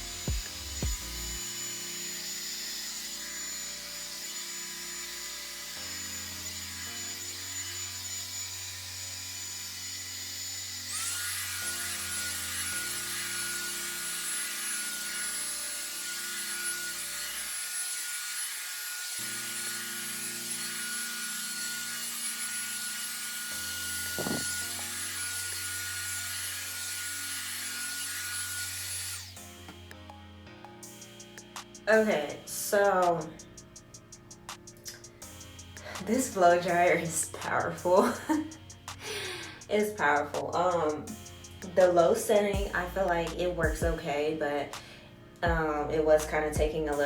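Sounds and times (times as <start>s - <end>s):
hair dryer whirring: 0.0s - 29.4s.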